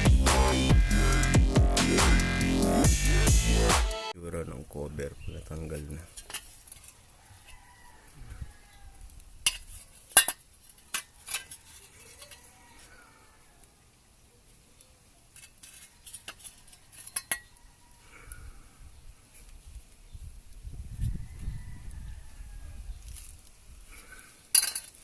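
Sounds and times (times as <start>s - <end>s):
metal tools clinking: 6.0s - 7.0s, 9.5s - 12.5s, 15.3s - 17.5s, 24.5s - 25.0s.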